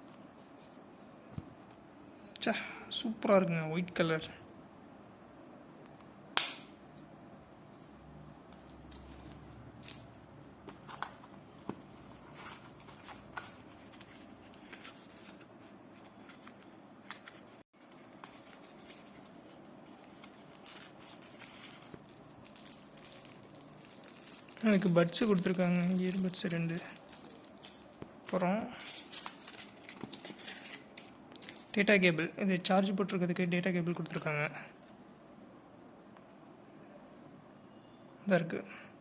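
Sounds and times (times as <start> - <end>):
packaging clicks and rustles: 8.6 - 28.1, 28.8 - 31.8.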